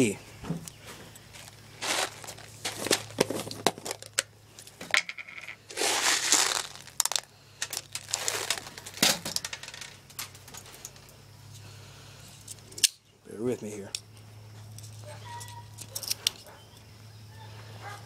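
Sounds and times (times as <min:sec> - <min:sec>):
rustling: 0:00.9 - 0:11.1.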